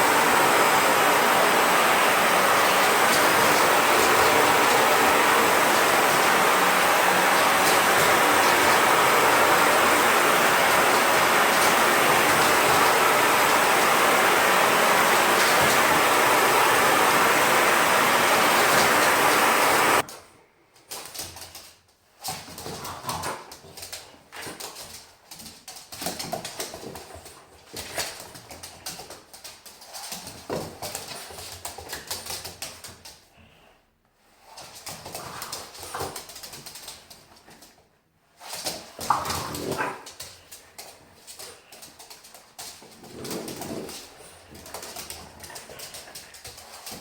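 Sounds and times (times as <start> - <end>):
vacuum cleaner running: 0.0 - 20.1.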